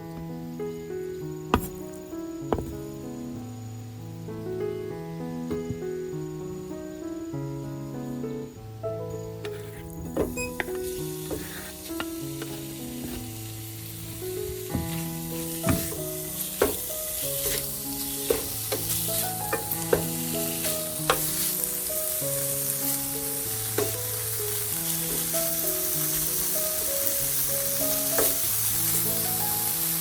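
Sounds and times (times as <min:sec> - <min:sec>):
music with held notes: 0:00.0 - 0:30.0
food sizzling in a frying pan: 0:09.2 - 0:30.0
utensil knocking against pan: 0:15.6 - 0:17.7, 0:18.3 - 0:21.4.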